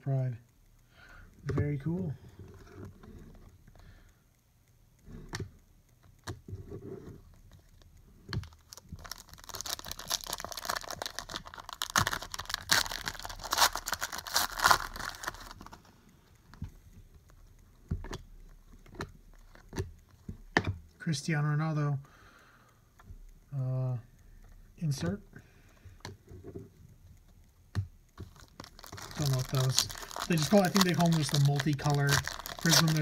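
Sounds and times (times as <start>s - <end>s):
plastic wrapper crinkling and tearing: 8.4s - 15.8s, 28.2s - 33.0s
cards clicking: 27.7s - 33.0s.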